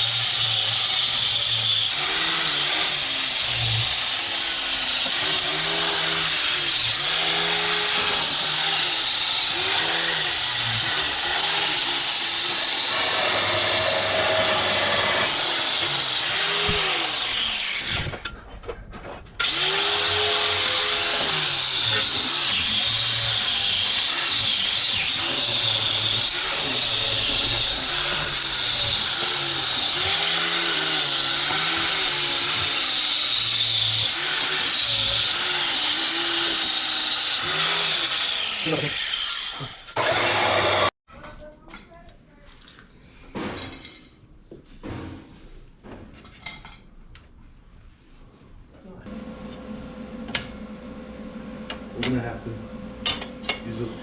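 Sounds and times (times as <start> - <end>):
angle grinder cutting steel: 0.0 - 18.2, 19.4 - 41.0.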